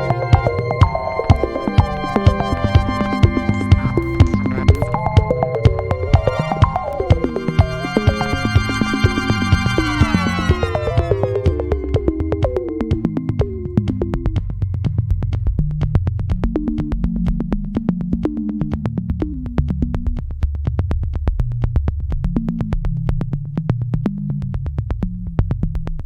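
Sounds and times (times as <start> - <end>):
electronic music with synth bass: 0.0 - 14.4.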